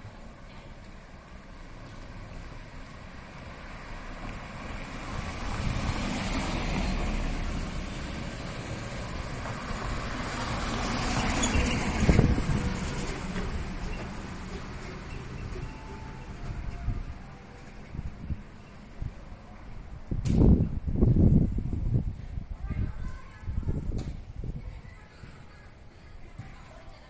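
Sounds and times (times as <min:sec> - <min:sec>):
vehicle passing rumble: 0:00.0 - 0:24.6
sharp thump: 0:20.2 - 0:20.6.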